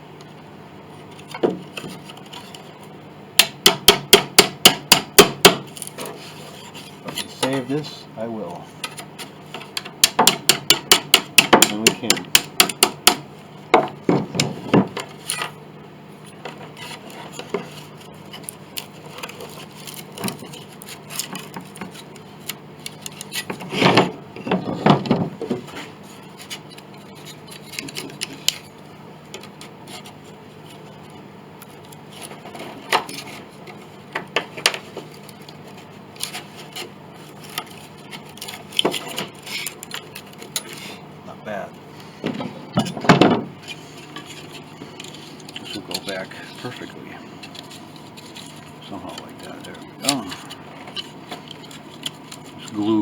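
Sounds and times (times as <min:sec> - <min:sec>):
wooden pieces knocking: 0:09.6 - 0:15.2
scraping: 0:42.0 - 0:53.0.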